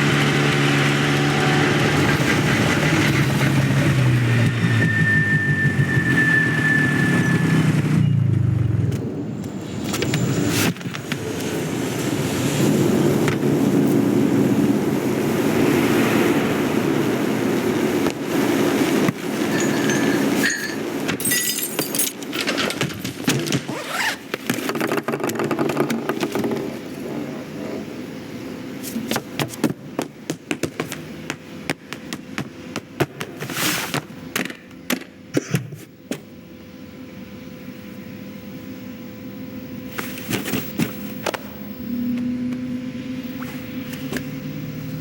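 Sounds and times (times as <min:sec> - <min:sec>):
thin high tone: 0:19.5 - 0:21.8
steady hum: 0:26.6 - 0:45.0.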